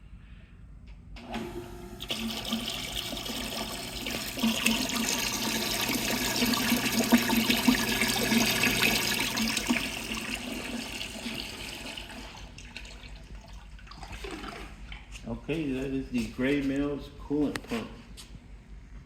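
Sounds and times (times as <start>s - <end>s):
pump motor hum: 1.2s - 15.0s
water splashing and gurgling: 12.6s - 15.1s.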